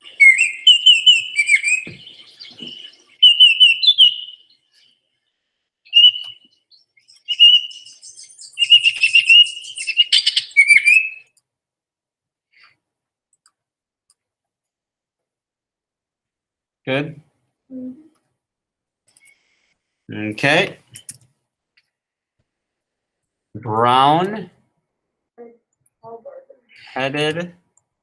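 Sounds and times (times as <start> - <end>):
recorded bird song over speaker: 0.0 - 5.1, 5.8 - 11.4, 25.4 - 27.4.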